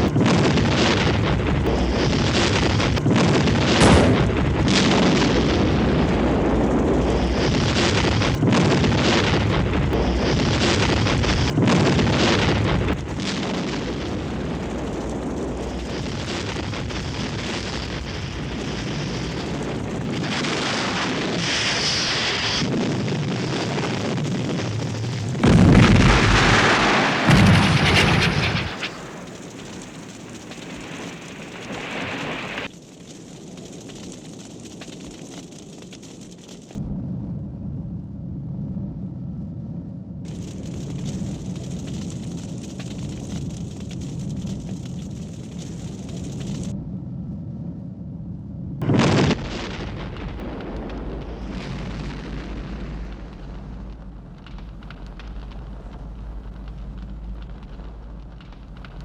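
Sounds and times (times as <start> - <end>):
low rumble: 0.0 - 20.4, 24.9 - 32.7, 36.8 - 59.0
explosion blasts: 0.0 - 32.7, 48.8 - 59.0.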